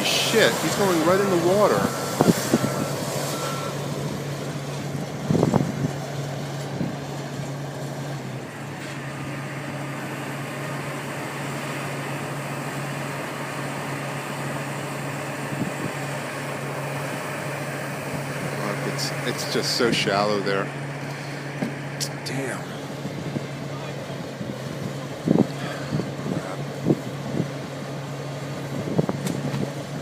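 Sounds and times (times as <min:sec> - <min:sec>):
crane engine running: 0:00.0 - 0:30.0
reversing alarm beeping: 0:00.8 - 0:04.0.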